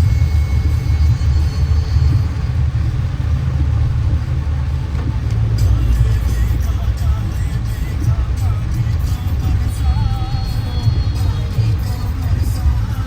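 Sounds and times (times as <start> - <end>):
vehicle engine and road noise: 0.0 - 13.0.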